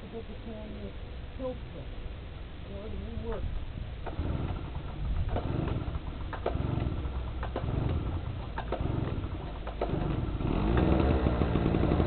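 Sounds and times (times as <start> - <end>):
recoil starter pulls: 4.0 - 12.0
small generator engine: 4.0 - 12.0.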